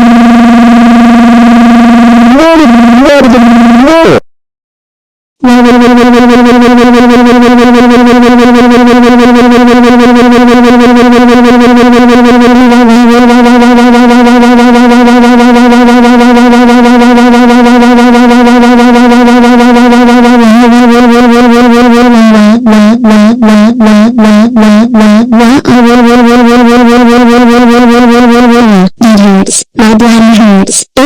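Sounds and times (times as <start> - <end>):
steady synthesizer tone: 0.0 - 3.8, 5.4 - 29.3.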